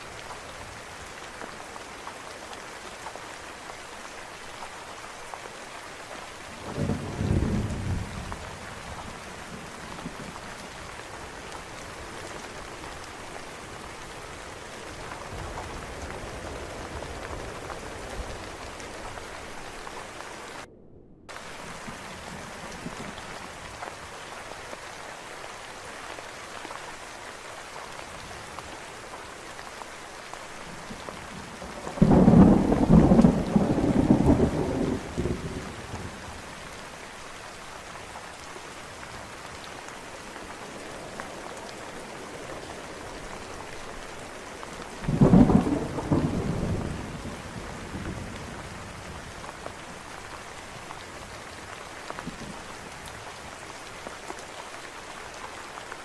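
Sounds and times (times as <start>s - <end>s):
steady rain: 0.0s - 20.7s, 21.3s - 56.0s
thunder claps: 6.5s - 10.8s, 31.3s - 36.5s, 44.6s - 49.4s.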